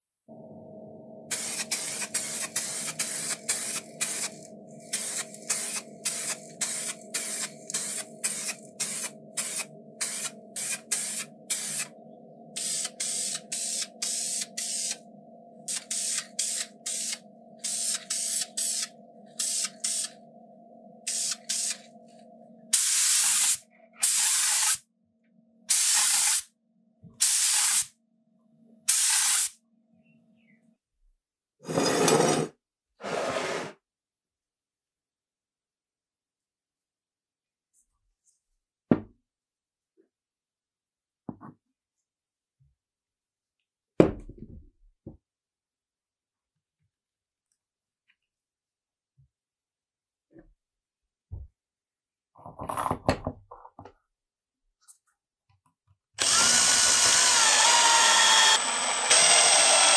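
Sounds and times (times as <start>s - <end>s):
spray paint hissing bursts: 1.3s - 11.9s, 12.6s - 15.0s, 15.7s - 20.2s, 21.1s - 21.8s, 22.7s - 24.8s, 25.7s - 26.5s, 27.2s - 27.9s, 28.9s - 29.6s.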